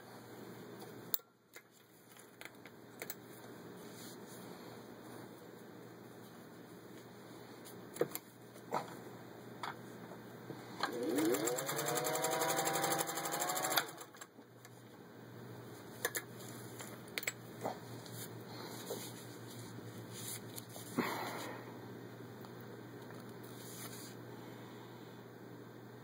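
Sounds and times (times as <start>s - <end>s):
sewing machine stitching: 10.9s - 14.2s.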